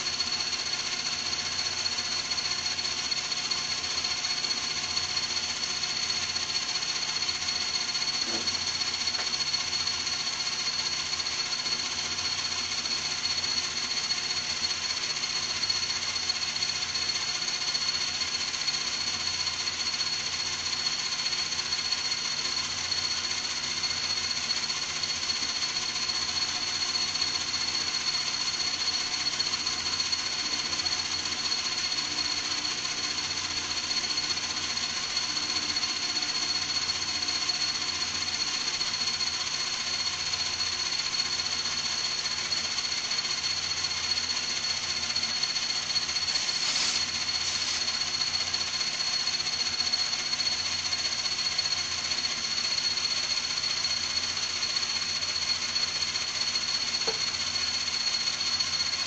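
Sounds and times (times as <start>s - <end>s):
metal lathe running: 0.0s - 59.0s.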